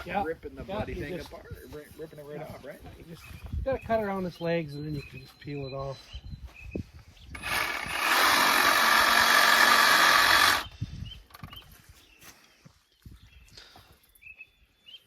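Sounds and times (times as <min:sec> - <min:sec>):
reciprocating saw running: 0:07.4 - 0:10.7.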